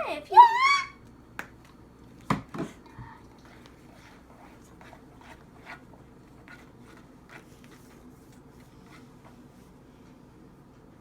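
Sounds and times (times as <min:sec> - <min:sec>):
spoon stirring slime in bowl: 0:03.2 - 0:09.7.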